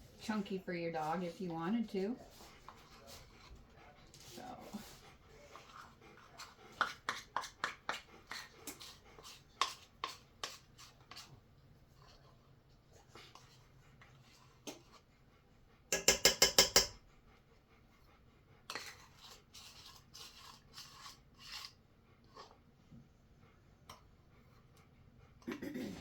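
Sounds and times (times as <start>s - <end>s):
utensil scraping bowl: 0.2s - 15.1s, 15.9s - 17.0s, 18.7s - 22.6s
utensil knocking on bowl: 15.9s - 17.0s.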